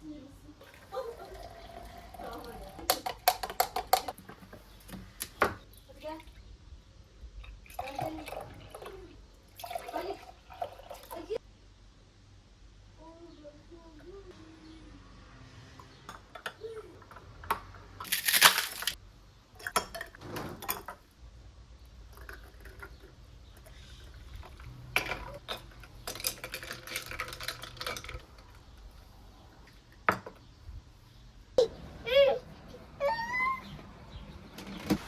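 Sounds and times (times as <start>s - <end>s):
rustling clatter: 22.1s - 30.0s
objects clinking and tapping: 25.0s - 28.8s.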